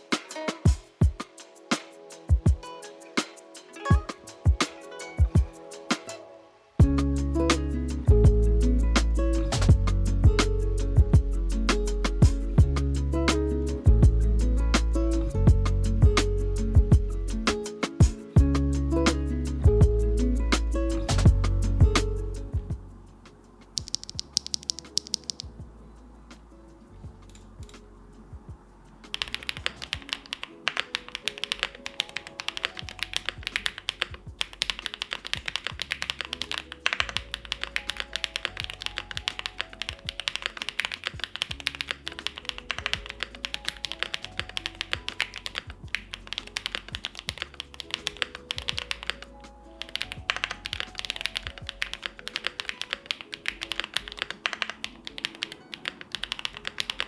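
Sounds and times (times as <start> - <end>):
background music with bass: 6.8 - 30.0
mechanical keyboard typing: 23.8 - 25.5, 29.1 - 57.0.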